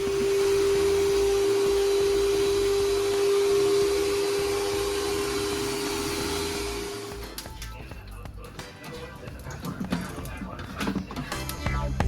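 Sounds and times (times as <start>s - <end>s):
electric motor humming: 0.0s - 7.3s.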